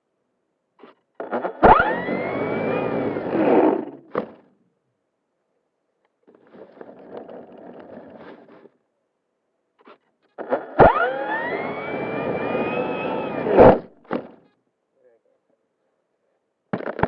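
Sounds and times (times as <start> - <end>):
scraping rattling noise with whine: 1.6 - 3.9, 10.8 - 13.8.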